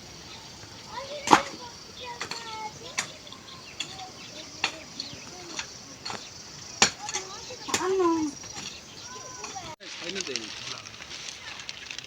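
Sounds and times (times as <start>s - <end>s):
faint voices: 0.0s - 11.8s
sharp knocks: 1.2s - 9.7s.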